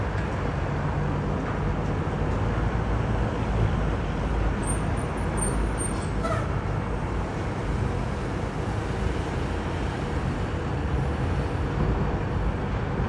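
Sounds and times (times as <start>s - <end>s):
jet engines rumbling: 5.2s - 12.6s.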